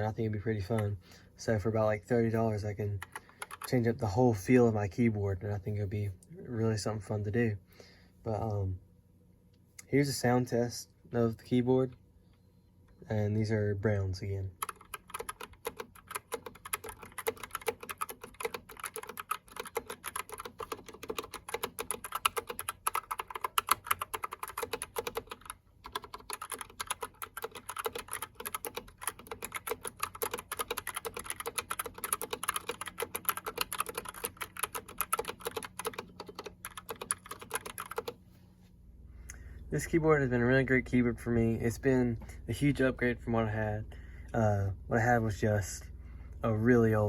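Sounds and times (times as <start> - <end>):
mechanical keyboard typing: 3.0 - 3.8, 14.6 - 38.2.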